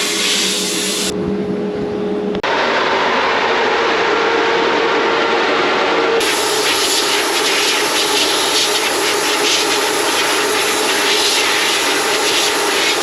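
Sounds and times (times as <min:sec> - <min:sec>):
sandblast gun hissing: 0:00.0 - 0:01.1, 0:06.2 - 0:13.0
dust collector fan: 0:00.0 - 0:13.0.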